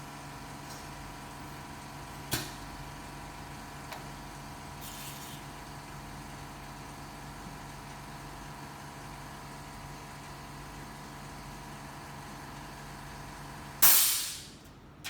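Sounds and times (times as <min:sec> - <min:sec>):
brief hiss: 0:13.8 - 0:14.5.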